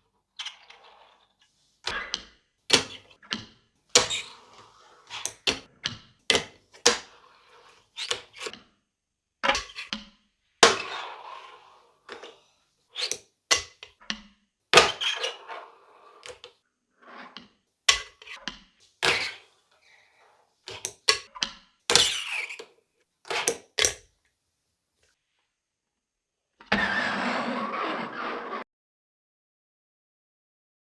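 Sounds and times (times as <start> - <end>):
fingerboard wheels rolling: 10.6 - 12.4, 14.8 - 19.4, 26.7 - 28.6.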